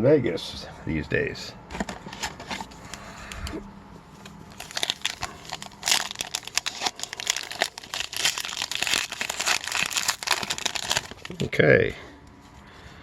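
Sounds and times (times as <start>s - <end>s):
wrapper crinkling and tearing: 4.5s - 11.5s.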